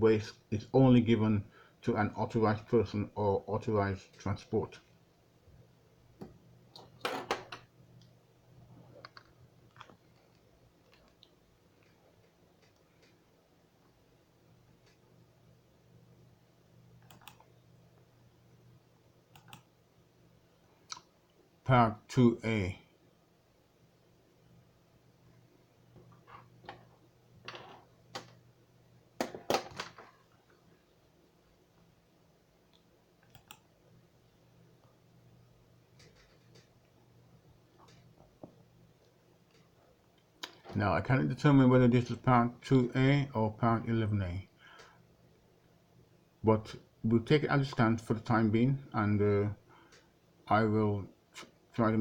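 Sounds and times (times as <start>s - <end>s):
faint low hum: 0.0s - 52.0s
sharp clicks: 17.0s - 17.5s, 19.3s - 19.7s, 32.7s - 33.7s.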